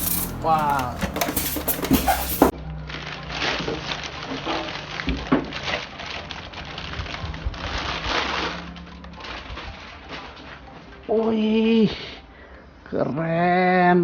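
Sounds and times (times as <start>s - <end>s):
packaging rustling and crinkling: 0.0s - 10.7s.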